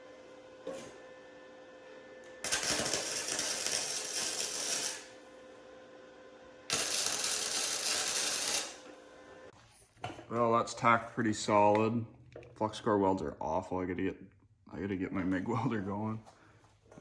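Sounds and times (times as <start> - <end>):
welding arc crackling: 2.4 - 5.2, 6.7 - 8.8.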